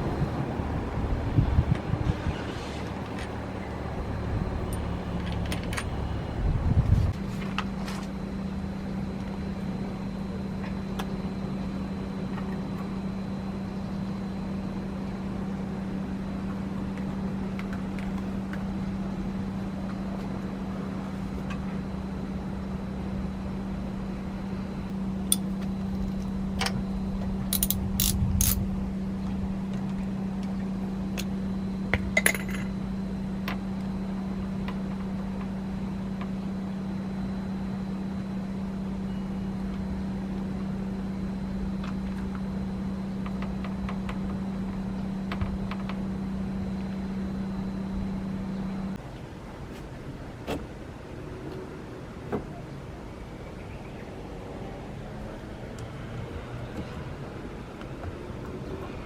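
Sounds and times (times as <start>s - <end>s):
steady low hum: 0.0s - 59.0s
metallic clicks of hand tools: 27.5s - 28.6s.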